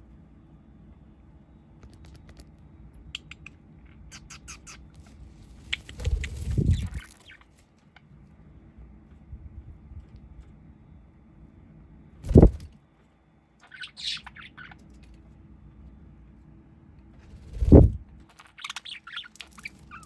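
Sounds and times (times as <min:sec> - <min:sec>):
bird clicks and taps: 0:01.8 - 0:02.4
low rumble of movement: 0:05.0 - 0:07.1, 0:09.0 - 0:10.6, 0:12.1 - 0:12.8, 0:17.0 - 0:18.3.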